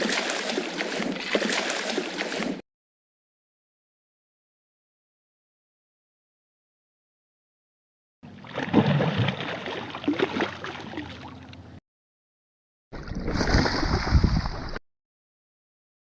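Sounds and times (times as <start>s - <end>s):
fish splashing in water: 0.0s - 2.6s, 8.4s - 11.4s, 13.0s - 14.8s.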